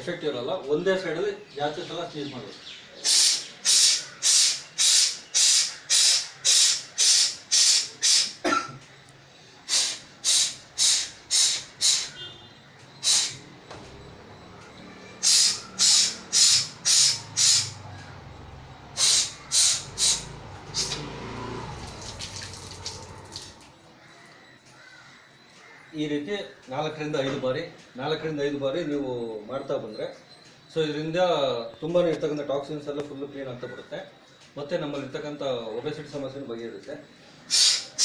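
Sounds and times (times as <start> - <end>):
hissy nasal blows: 3.0 - 8.5, 9.7 - 12.3, 13.0 - 13.5, 15.2 - 17.8, 19.0 - 21.2, 37.5 - 38.0.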